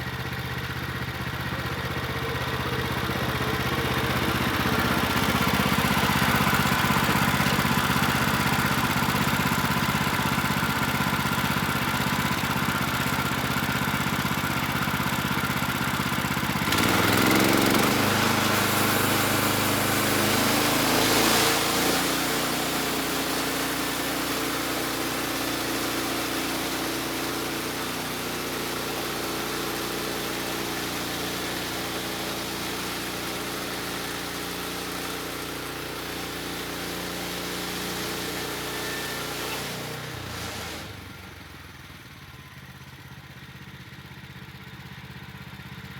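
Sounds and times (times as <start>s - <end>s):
gasoline engine running: 0.0s - 43.6s.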